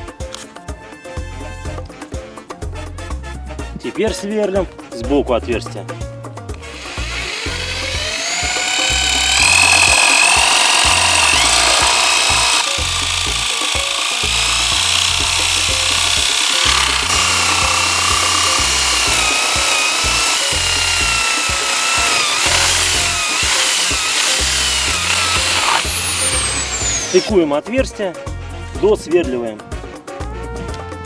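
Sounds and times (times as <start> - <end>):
bit scraping wood: 6.6 - 27.3
electric drill motor whine: 6.6 - 27.3.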